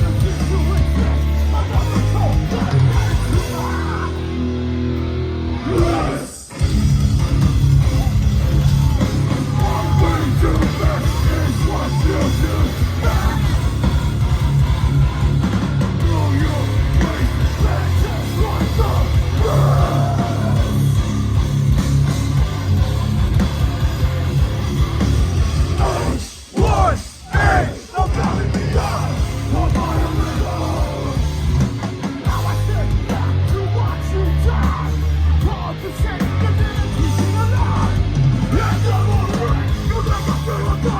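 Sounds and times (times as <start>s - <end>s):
shouted vocals: 0.0s - 4.6s, 5.4s - 6.6s, 7.8s - 13.9s, 16.0s - 21.2s, 25.6s - 40.9s
distorted guitars: 0.0s - 40.9s
drums: 0.0s - 40.9s
hardcore band playing: 0.0s - 40.9s.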